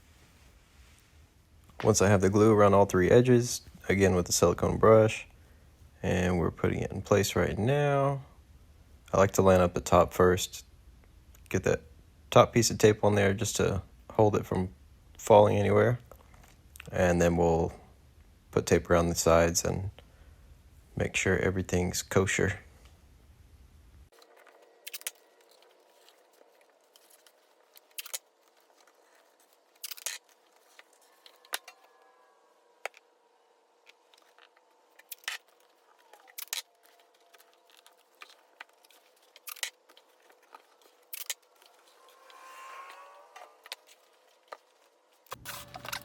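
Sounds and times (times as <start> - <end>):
tape pulled off roll and torn: 24.2 - 32.1, 34.0 - 46.0.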